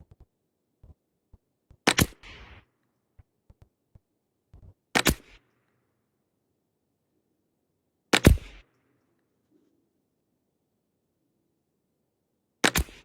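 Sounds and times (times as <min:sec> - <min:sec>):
rifle shots: 0:01.8 - 0:02.7, 0:05.0 - 0:05.4, 0:08.1 - 0:08.6, 0:12.6 - 0:13.0.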